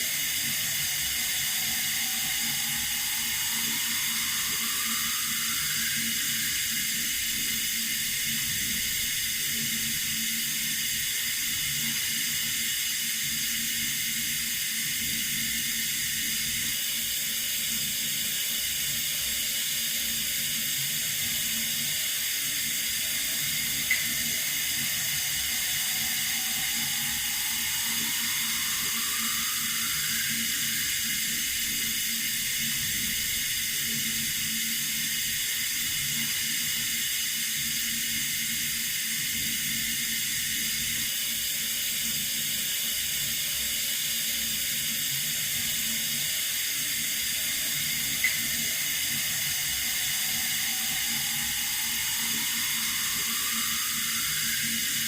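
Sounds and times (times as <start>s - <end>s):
faint rising tone: 0.0s - 8.9s, 23.0s - 32.8s, 47.3s - 55.0s
water running from a tap: 0.1s - 42.0s, 44.0s - 55.0s.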